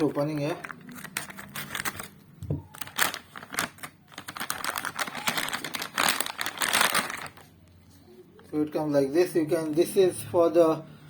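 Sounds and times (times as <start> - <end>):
packaging crinkling and rustling: 0.0 - 8.0.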